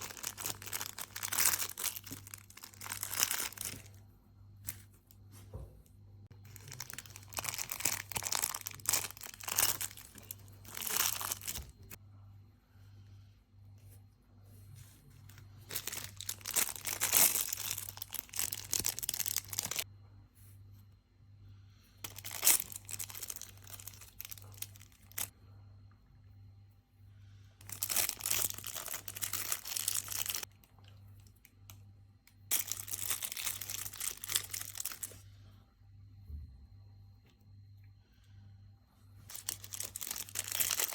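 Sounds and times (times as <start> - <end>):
packaging crinkling and tearing: 0.0 - 4.0, 6.4 - 12.0, 15.3 - 19.8, 22.0 - 25.3, 27.6 - 30.6, 32.5 - 35.2, 39.3 - 40.9.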